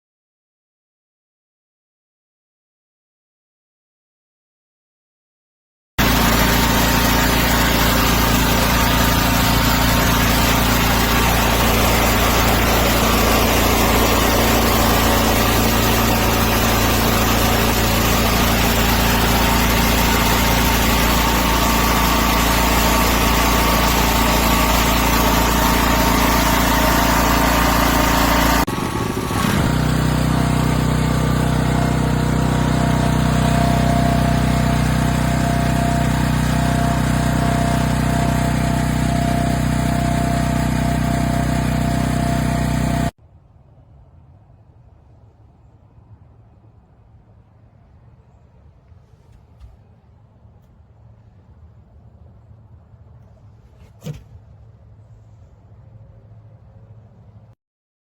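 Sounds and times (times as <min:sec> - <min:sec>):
generator engine running: 0:06.0 - 0:43.1.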